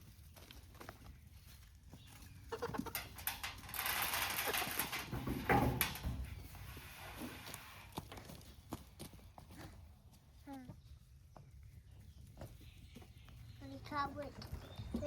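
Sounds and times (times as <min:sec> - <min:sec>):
chickens clucking: 0:00.0 - 0:08.0
rustling noise: 0:00.0 - 0:09.0.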